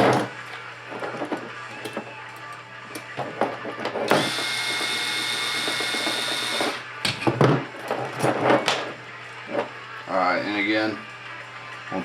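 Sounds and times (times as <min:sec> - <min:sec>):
power drill whining: 0:04.1 - 0:06.9.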